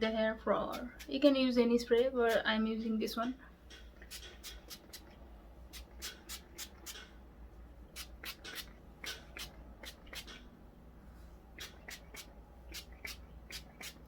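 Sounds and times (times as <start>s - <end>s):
spray bottle hissing bursts: 4.0s - 5.0s, 5.7s - 7.1s, 7.9s - 10.4s, 11.6s - 14.0s.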